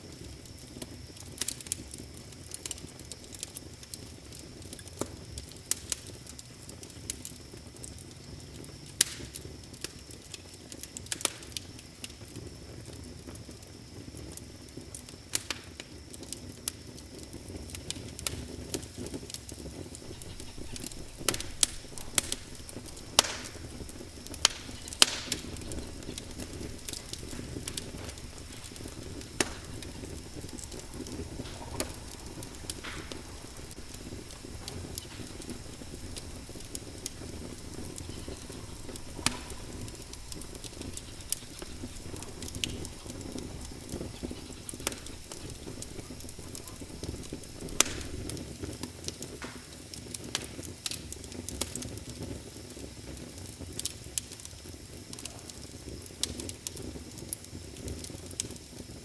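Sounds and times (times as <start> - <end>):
wood fire crackling and popping: 0.0 - 59.0
low rumble: 19.9 - 48.2.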